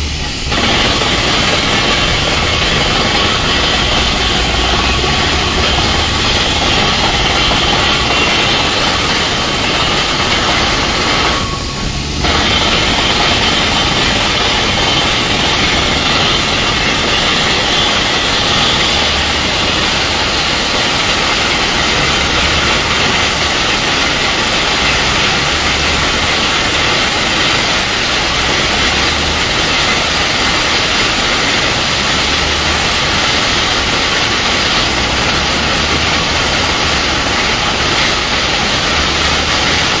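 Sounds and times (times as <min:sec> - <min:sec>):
drilling rig engine and compressor: 0:00.0 - 0:40.0.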